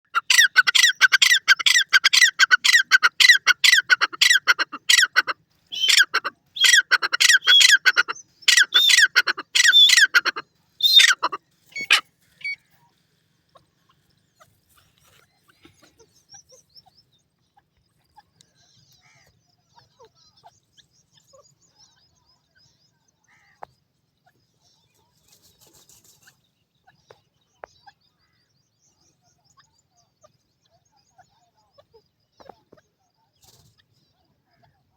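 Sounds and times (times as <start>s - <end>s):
bird harsh repeated calls: 0.0s - 12.6s.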